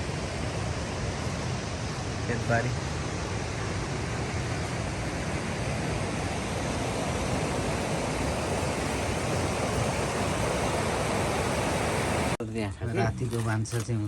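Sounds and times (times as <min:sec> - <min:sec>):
river water rushing over rocks: 0:03.0 - 0:12.4.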